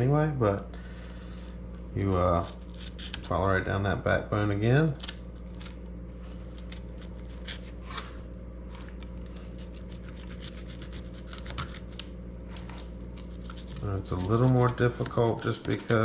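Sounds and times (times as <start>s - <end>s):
low hum: 0.0s - 16.0s
knife scraping along fish bones: 2.0s - 3.4s, 6.4s - 16.0s.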